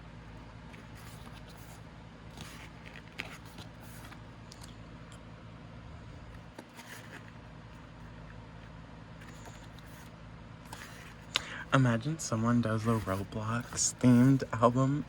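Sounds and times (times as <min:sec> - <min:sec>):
low electrical hum: 0:00.0 - 0:15.0
pages turning and rustling: 0:00.6 - 0:04.8, 0:06.3 - 0:07.9, 0:09.2 - 0:10.1, 0:10.7 - 0:11.4, 0:12.6 - 0:14.5.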